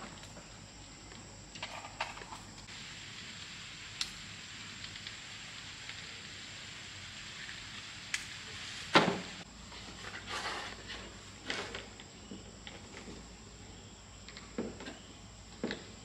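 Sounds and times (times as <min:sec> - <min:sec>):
steady hiss: 0:00.0 - 0:16.0
scraping and rustling: 0:08.6 - 0:12.0.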